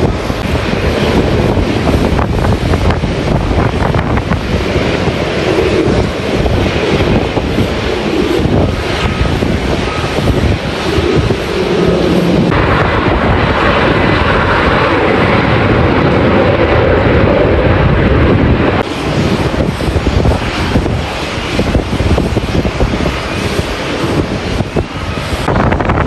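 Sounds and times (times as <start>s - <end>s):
jet engines running: 0.0s - 26.0s
wind buffeting microphone: 0.0s - 26.0s.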